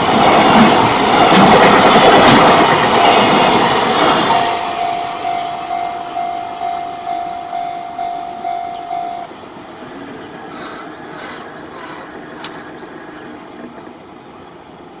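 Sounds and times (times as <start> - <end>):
steady railway noise: 0.0 - 15.0
level-crossing warning bell: 2.9 - 9.6.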